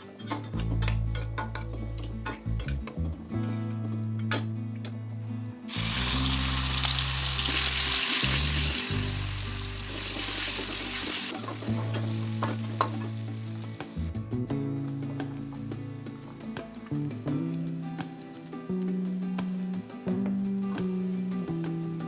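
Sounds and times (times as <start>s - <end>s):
food sizzling in hot oil: 5.7s - 14.0s.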